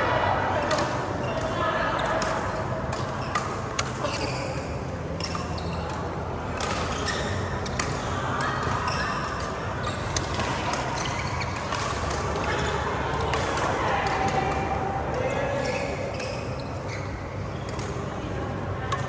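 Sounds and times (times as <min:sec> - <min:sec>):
rackets striking shuttlecock: 0:07.6 - 0:14.8.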